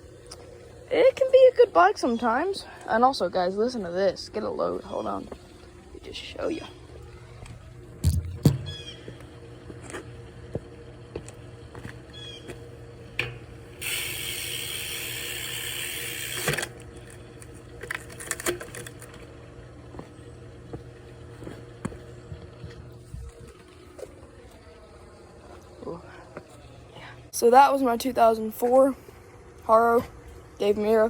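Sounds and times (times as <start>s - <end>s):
freewheel hub buzzing: 7.9s - 19.3s
bicycle being handled: 13.2s - 19.3s.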